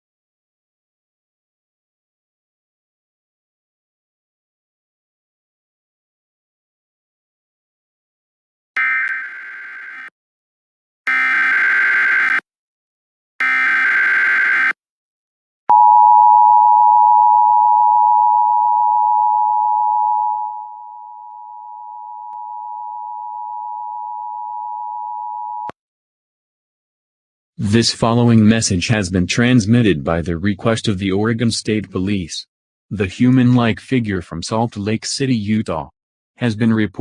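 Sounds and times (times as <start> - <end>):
buzzy digital data bursts: 13.4 - 14.8
steady dual tone: 15.7 - 25.7.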